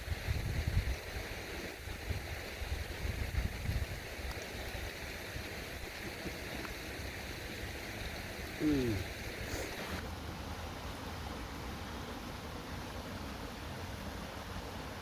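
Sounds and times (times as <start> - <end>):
wind rumbling on microphone: 0.0 - 10.0
rushing outdoor ambience: 0.0 - 15.0.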